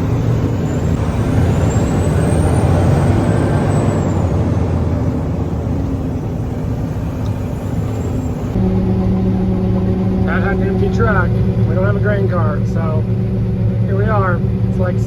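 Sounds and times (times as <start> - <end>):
road noise: 0.0 - 15.0
truck diesel engine running: 0.0 - 15.0
thin high whine: 5.8 - 15.0.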